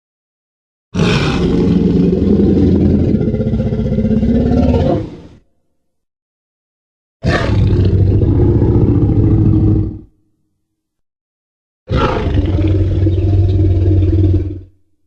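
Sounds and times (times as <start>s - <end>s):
dinosaur roar: 1.0s - 5.4s, 7.2s - 10.1s, 11.9s - 14.8s.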